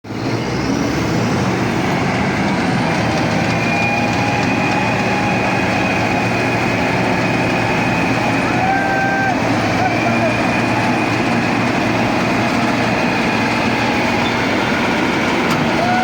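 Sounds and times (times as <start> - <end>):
combine harvester running: 0.1 - 16.0.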